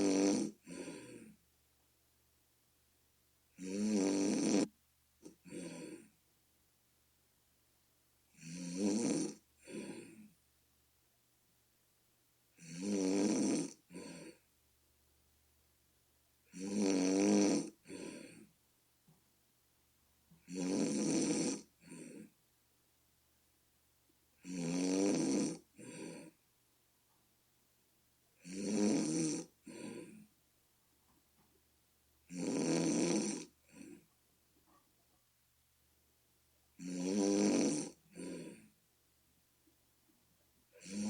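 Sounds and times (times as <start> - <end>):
person snoring: 0.0 - 1.4, 3.6 - 4.7, 5.3 - 6.1, 8.3 - 10.3, 12.6 - 14.4, 16.5 - 18.5, 20.4 - 22.3, 24.4 - 26.4, 28.4 - 30.3, 32.3 - 34.0, 36.8 - 38.7, 40.8 - 41.0.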